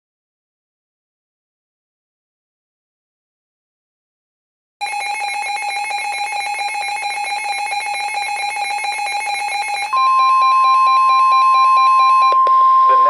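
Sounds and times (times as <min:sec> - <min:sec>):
rapid electronic alarm beeps: 0:04.8 - 0:13.0
steady warning alarm tone: 0:04.8 - 0:13.0.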